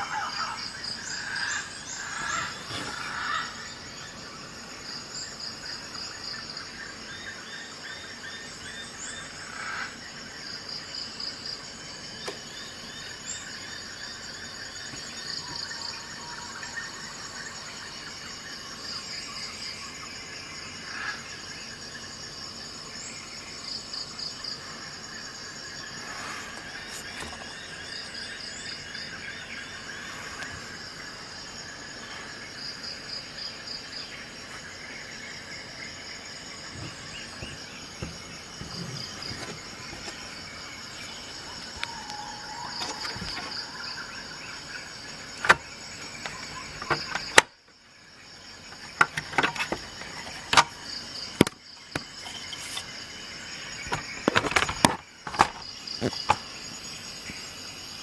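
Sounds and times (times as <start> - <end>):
insects chirping in trills: 0.0 - 58.0
sharp clicks and knocks: 48.8 - 50.8.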